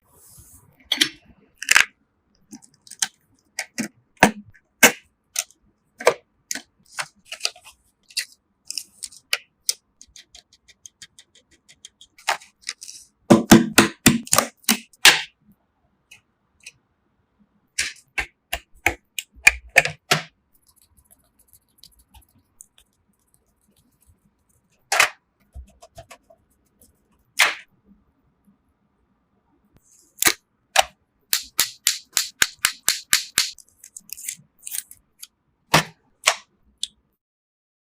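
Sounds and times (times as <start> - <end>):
computer hardware clicks and knocks: 30.2 - 33.6.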